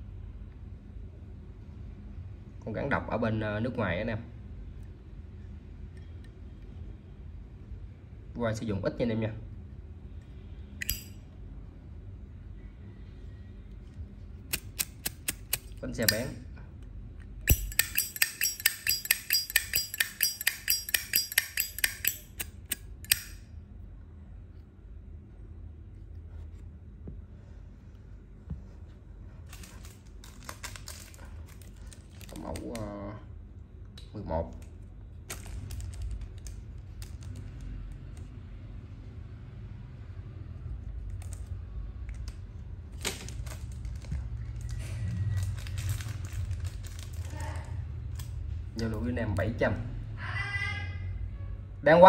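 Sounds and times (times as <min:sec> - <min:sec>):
lighter lid metallic clicks: 0:10.8 - 0:11.1, 0:17.5 - 0:23.4.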